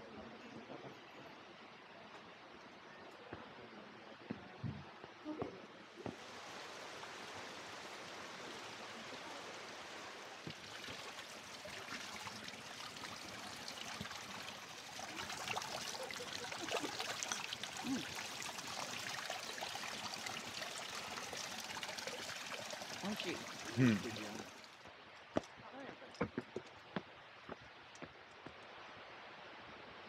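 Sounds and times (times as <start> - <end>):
water trickling and splashing: 5.9 - 26.3.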